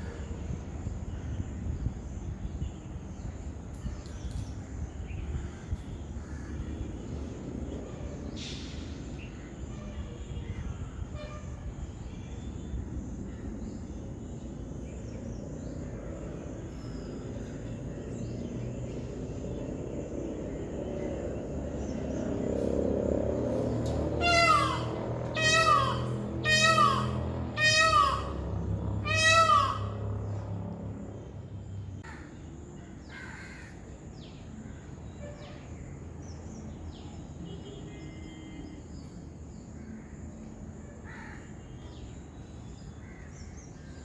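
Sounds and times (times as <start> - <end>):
peacock calling: 23.5 - 31.4.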